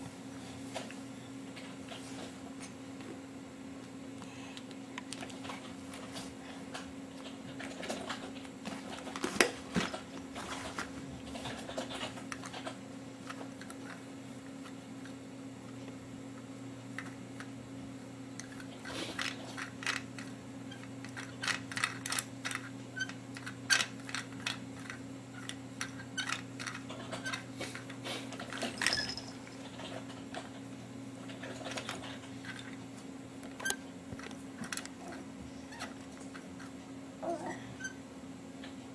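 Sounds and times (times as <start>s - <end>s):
low electrical hum: 0.0s - 38.9s
small toys clicking and rattling: 7.6s - 14.0s, 18.4s - 30.6s, 33.6s - 36.7s.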